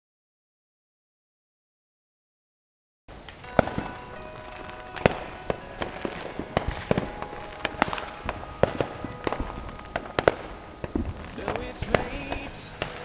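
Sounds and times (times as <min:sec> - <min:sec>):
fireworks crackling: 0:03.2 - 0:13.0.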